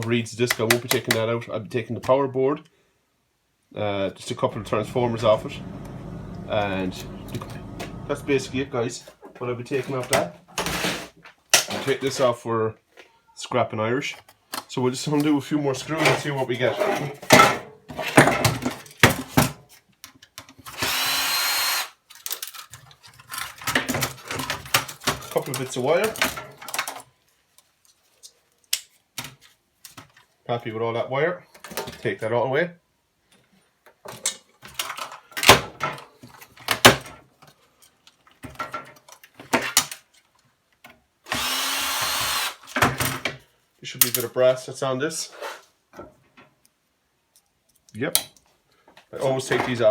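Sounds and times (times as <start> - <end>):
cordless drill whining: 4.6 - 8.8, 20.8 - 21.9, 41.3 - 42.7
metal and plastic parts clattering: 15.9 - 20.6, 22.1 - 27.1, 34.0 - 40.4.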